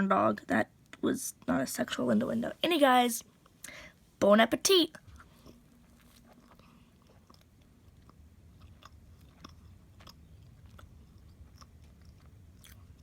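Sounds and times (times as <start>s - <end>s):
mouth chewing clicks: 6.3s - 13.0s.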